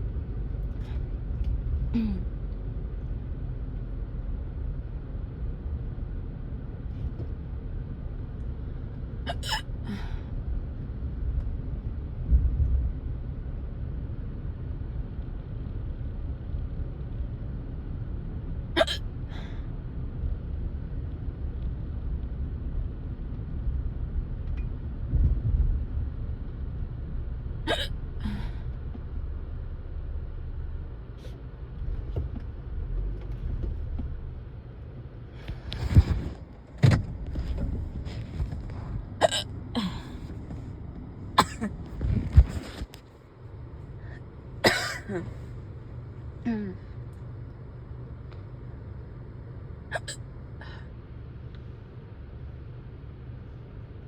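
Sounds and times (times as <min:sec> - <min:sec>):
car road and engine rumble: 0:00.0 - 0:54.0
person hiccupping: 0:49.9 - 0:50.2.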